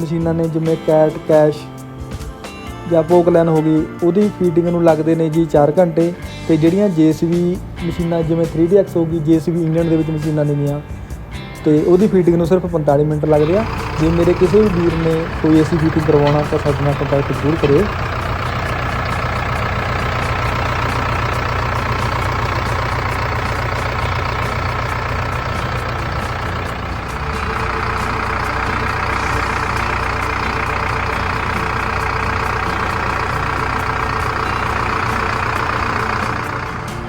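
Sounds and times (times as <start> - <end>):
diesel engine idling: 0.0 - 37.0.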